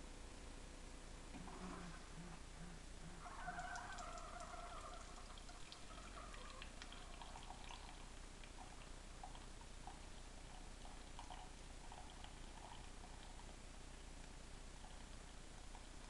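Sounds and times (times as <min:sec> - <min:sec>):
coffee maker brewing: 0:01.3 - 0:02.4, 0:03.0 - 0:16.0
coffee pouring into a cup: 0:03.3 - 0:14.0, 0:14.8 - 0:16.0.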